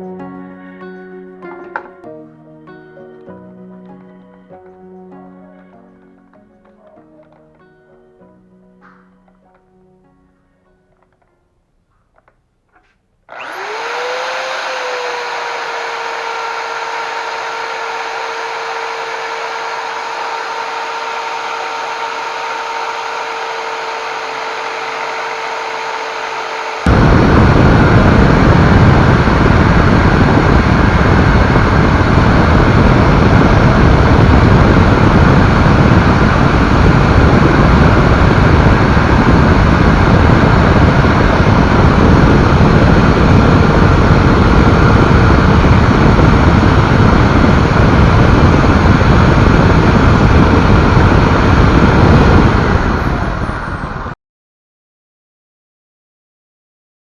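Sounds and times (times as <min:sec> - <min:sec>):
electric drill sanding: 0:13.3 - 0:53.8.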